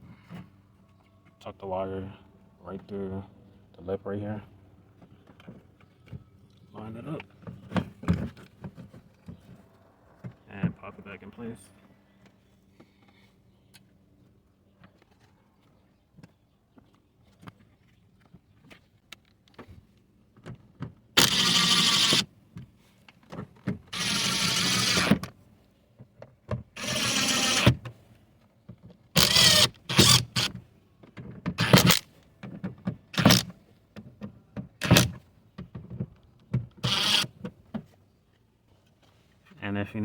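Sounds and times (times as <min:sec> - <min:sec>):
cordless power driver bursts: 0:21.2 - 0:22.3, 0:23.9 - 0:25.3, 0:26.8 - 0:27.8, 0:29.2 - 0:30.6, 0:31.6 - 0:32.0, 0:33.2 - 0:33.5, 0:34.8 - 0:35.2, 0:36.8 - 0:37.3.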